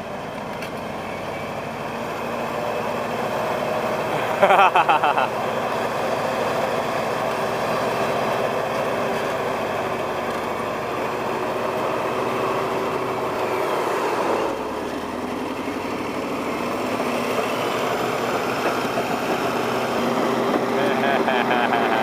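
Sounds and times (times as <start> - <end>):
diesel engine running: 0.0 - 22.0.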